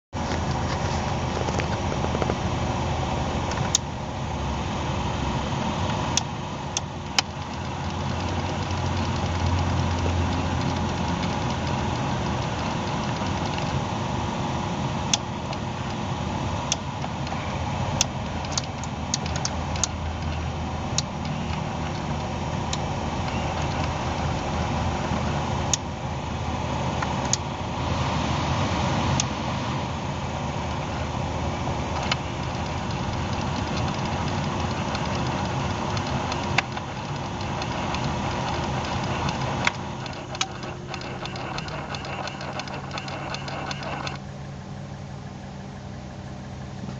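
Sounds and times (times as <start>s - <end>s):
car engine idling: 0.1s - 46.9s
sharp clicks: 6.2s - 13.8s, 18.0s - 20.4s, 32.0s - 44.2s.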